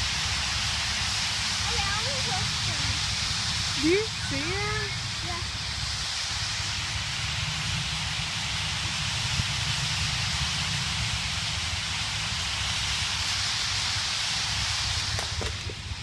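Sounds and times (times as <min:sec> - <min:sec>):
low rumble: 0:00.0 - 0:16.0
massed birds calling: 0:01.6 - 0:05.9.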